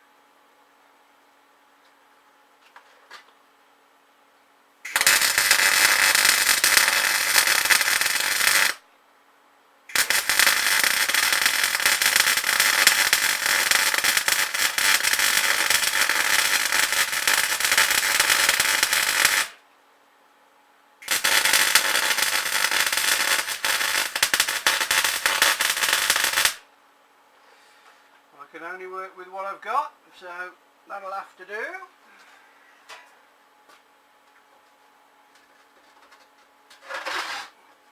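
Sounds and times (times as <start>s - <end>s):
welder crackling: 4.9s - 8.8s, 9.9s - 19.6s, 21.0s - 26.6s.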